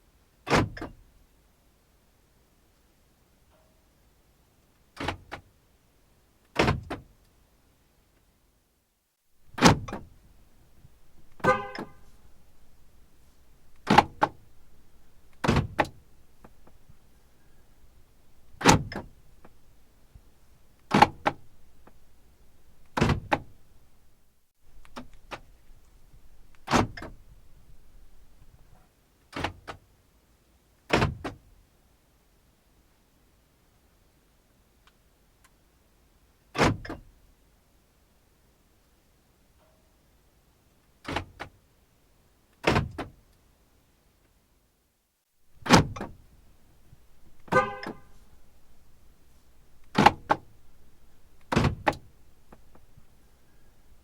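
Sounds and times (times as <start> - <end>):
car door locks clunking: 9.5 - 17.1, 17.8 - 19.8, 20.8 - 23.7, 24.7 - 28.2, 45.6 - 53.1.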